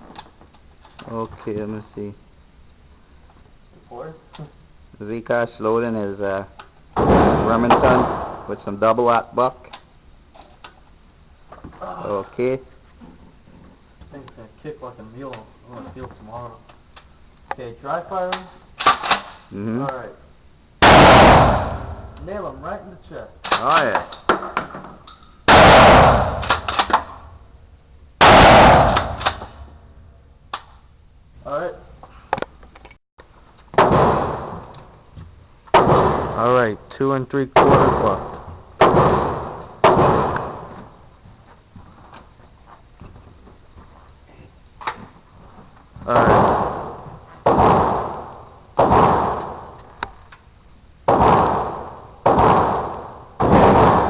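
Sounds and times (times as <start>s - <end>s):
shotgun blasts with echo: 7.0s - 8.7s, 20.8s - 22.2s, 25.5s - 27.3s, 28.2s - 29.7s, 33.7s - 34.7s, 35.7s - 36.6s, 37.6s - 40.8s, 46.1s - 49.8s, 51.1s - 54.0s.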